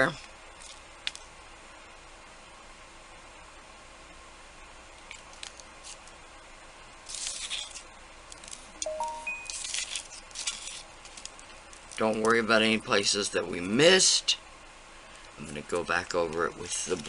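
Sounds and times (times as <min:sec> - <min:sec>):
brief faint tones: 0:08.9 - 0:09.6.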